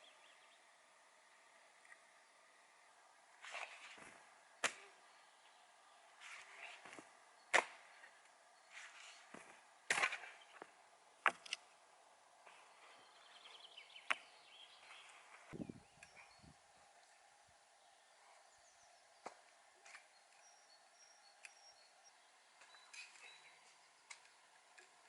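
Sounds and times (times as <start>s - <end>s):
spade scraping soil: 3.4s - 4.8s, 6.2s - 8.0s, 8.7s - 10.7s
spade striking ground: 6.2s - 11.6s.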